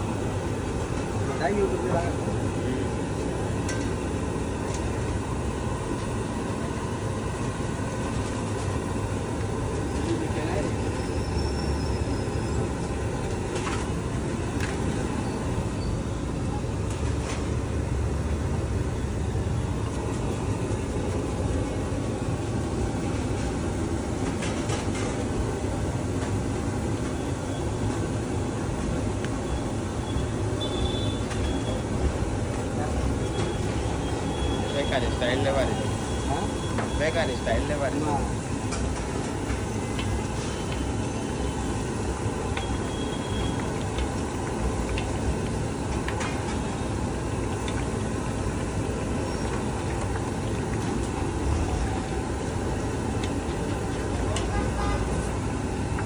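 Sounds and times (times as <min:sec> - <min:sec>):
constant low rumble: 0:00.0 - 0:56.0
frying in hot oil: 0:00.0 - 0:56.0.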